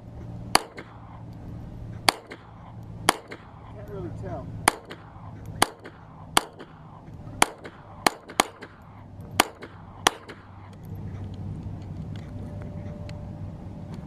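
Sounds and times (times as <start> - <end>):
gunshots: 0.5 - 1.2, 2.1 - 3.8, 4.6 - 10.7.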